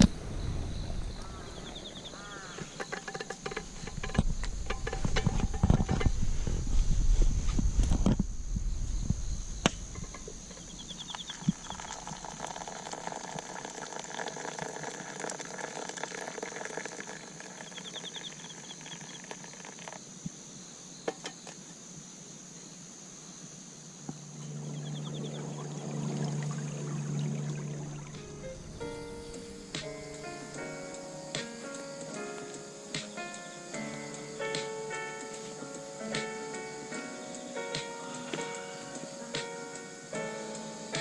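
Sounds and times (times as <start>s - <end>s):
insects chirring: 0.0s - 41.0s
low musical tone: 24.2s - 41.0s.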